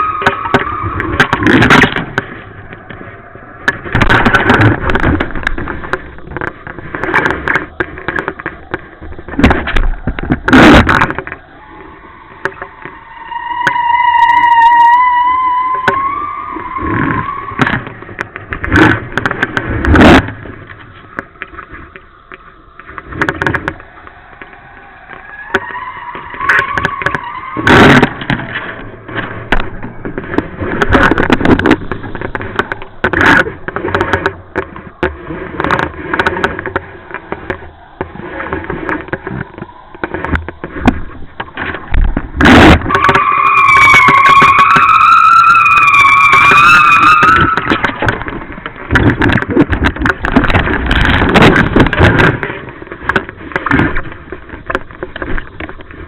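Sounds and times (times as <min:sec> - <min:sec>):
wavering whistle: 0:00.0 - 0:01.6, 0:11.4 - 0:17.7
wind buffeting microphone: 0:00.0 - 0:13.4.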